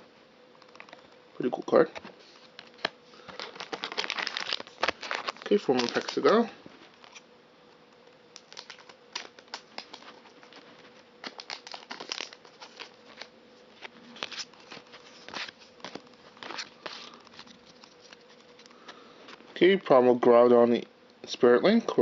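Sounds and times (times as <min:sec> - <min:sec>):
faint steady hum: 0:00.0 - 0:22.0
foil pack crinkling: 0:01.9 - 0:07.2, 0:08.0 - 0:19.4.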